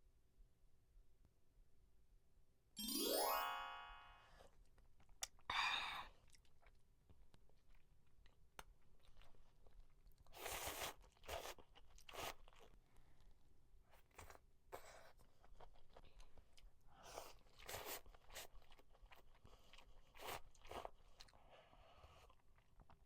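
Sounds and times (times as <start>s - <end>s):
rising sound effect: 2.8s - 4.2s.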